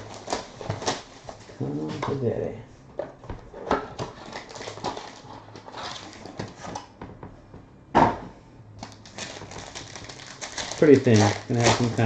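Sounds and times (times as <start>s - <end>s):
packaging rustling and crinkling: 0.0s - 2.2s, 3.9s - 6.8s, 8.8s - 12.0s.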